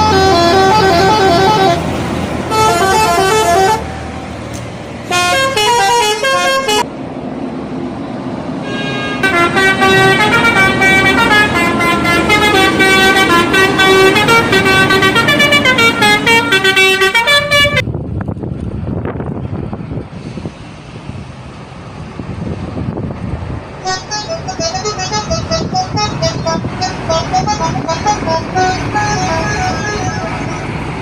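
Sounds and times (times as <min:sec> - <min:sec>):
bus horn playing melodic tones: 0:00.0 - 0:04.4, 0:05.0 - 0:06.9, 0:08.6 - 0:17.8, 0:23.8 - 0:31.0
low engine rumble: 0:00.0 - 0:08.6, 0:09.2 - 0:31.0
traffic rumble: 0:00.0 - 0:31.0.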